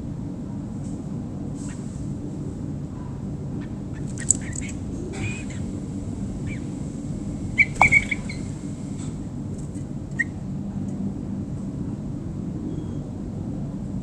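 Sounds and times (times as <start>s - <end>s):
steady low rumble: 0.0s - 14.0s
birds chirping: 3.6s - 9.2s.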